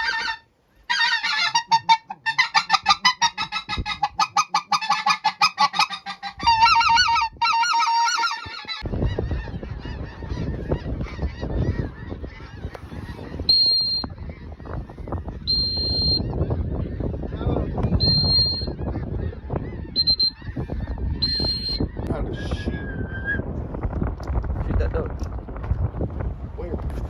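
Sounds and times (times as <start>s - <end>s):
goose-like honking calls: 0.0s - 22.1s
short high beeps: 13.5s - 14.1s, 15.5s - 16.2s, 18.0s - 18.7s, 20.0s - 20.4s.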